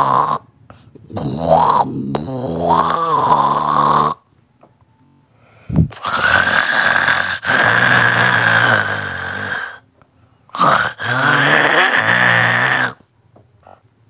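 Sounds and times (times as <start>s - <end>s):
person snoring loudly: 0.0s - 0.5s, 1.1s - 4.3s, 5.8s - 9.8s, 10.5s - 13.0s.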